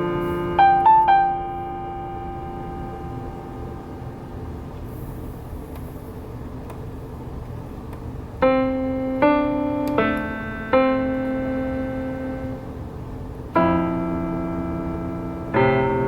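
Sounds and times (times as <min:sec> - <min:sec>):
piano chords: 0:00.0 - 0:05.0, 0:08.4 - 0:16.0.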